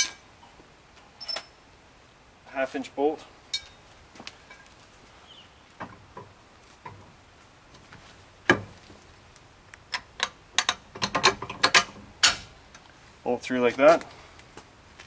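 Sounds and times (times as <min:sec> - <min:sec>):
metal parts clicking and knocking: 0:09.9 - 0:12.5.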